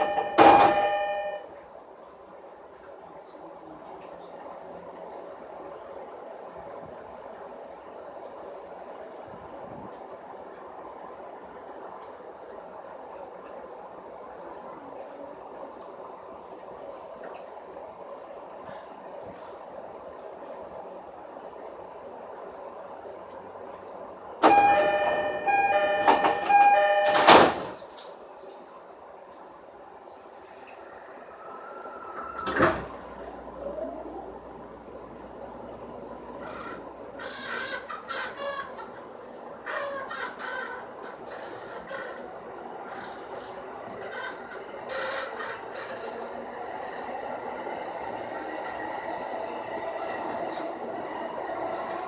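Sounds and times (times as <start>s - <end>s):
loud door clunk: 0.0s - 1.2s, 24.4s - 27.9s
sliding door motion: 0.0s - 1.4s, 24.4s - 28.0s, 30.5s - 37.5s
electric train running rumble: 0.0s - 1.5s, 15.4s - 28.0s, 29.0s - 52.0s
two-tone door chime: 0.0s - 1.5s, 24.4s - 27.7s.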